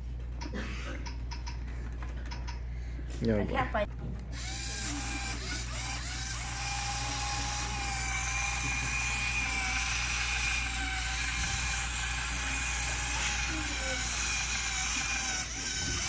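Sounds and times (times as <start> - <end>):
servo motors whirring: 4.4 - 16.0.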